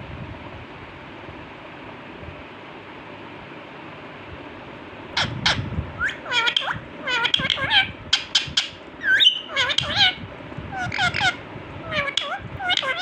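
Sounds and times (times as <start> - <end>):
parrot squawking and chattering: 5.2 - 13.0.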